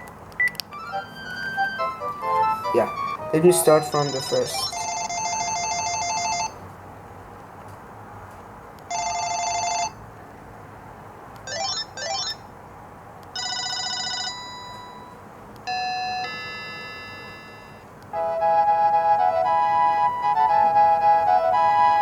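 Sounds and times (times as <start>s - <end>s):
cordless phone ringtones: 0.7s - 6.6s, 8.9s - 10.0s, 11.5s - 12.4s, 13.4s - 17.8s.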